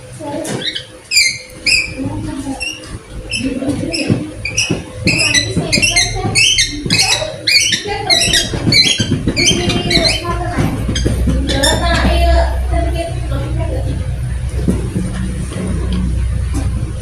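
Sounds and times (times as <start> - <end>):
murmur of voices: 0.0 - 17.0
high-pitched chirping: 0.5 - 12.1.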